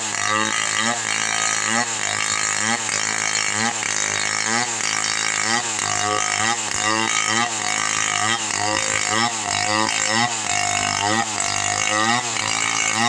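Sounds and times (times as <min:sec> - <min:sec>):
chainsaw cutting wood: 0:00.0 - 0:13.0.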